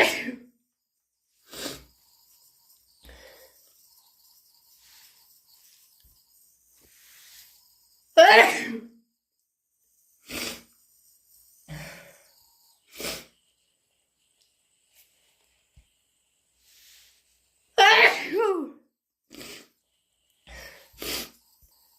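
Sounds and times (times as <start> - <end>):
person sneezing: 0.0 - 0.5, 8.2 - 8.9, 17.8 - 18.7
breathy inhale: 3.0 - 3.8, 11.7 - 13.4, 20.4 - 21.4
sharp breathy bursts: 3.0 - 3.8.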